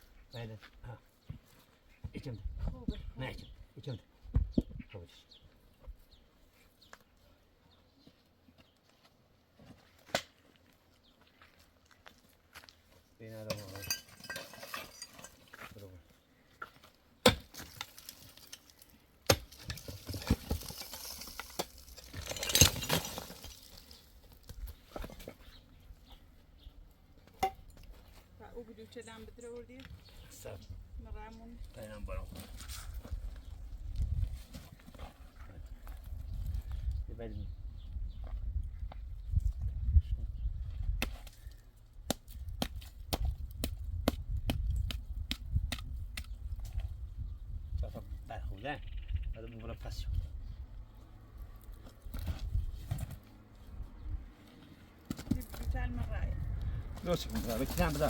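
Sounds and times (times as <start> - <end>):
low wind-like rumble: 42.4 - 49.4, 55.4 - 57.4.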